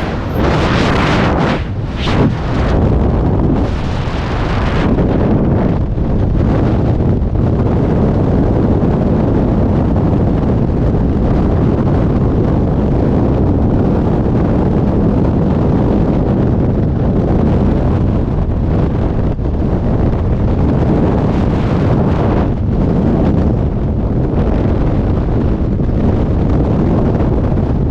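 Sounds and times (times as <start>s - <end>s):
wind buffeting microphone: 0.0s - 27.9s.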